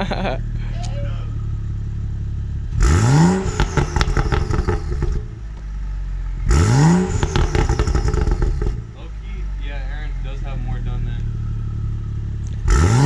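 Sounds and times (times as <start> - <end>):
car engine revving: 0.0 - 13.0
exhaust crackling and popping: 0.0 - 13.0.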